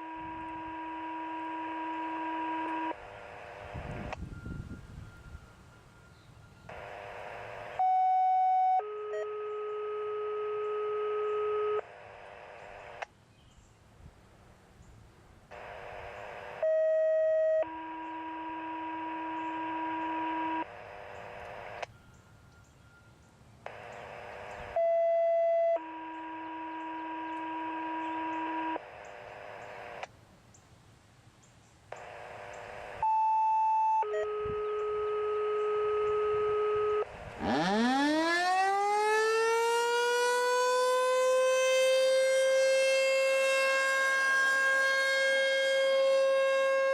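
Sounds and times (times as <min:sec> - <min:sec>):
two-tone radio paging tones: 0:00.0 - 0:13.1, 0:15.6 - 0:22.0, 0:23.7 - 0:30.1, 0:31.9 - 0:37.6
radio hiss: 0:02.7 - 0:04.3, 0:06.7 - 0:07.8, 0:11.6 - 0:13.1, 0:15.5 - 0:16.7, 0:18.1 - 0:21.9, 0:23.7 - 0:24.8, 0:25.8 - 0:30.1, 0:31.9 - 0:33.4.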